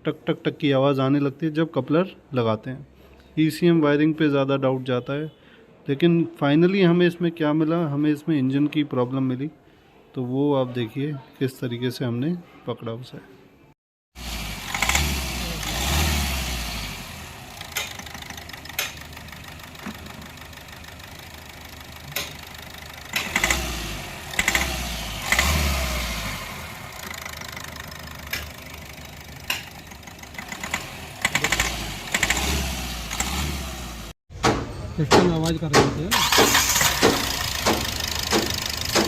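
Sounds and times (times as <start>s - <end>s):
engine running with sharp knock: 23.1s - 34.1s, 36.4s - 39.0s.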